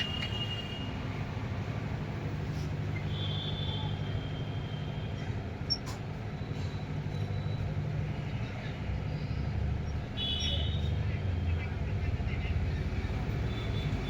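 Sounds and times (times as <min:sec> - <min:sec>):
street traffic rumble: 0:00.0 - 0:14.0.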